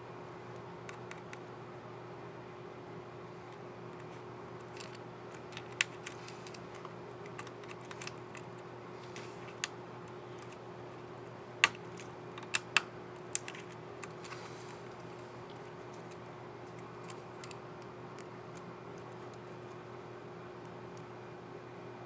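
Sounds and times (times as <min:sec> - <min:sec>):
faint steady hum: 0:00.0 - 0:22.0
small plastic keyboard clicks: 0:00.8 - 0:01.5, 0:04.0 - 0:08.6, 0:11.6 - 0:14.4, 0:16.0 - 0:19.8.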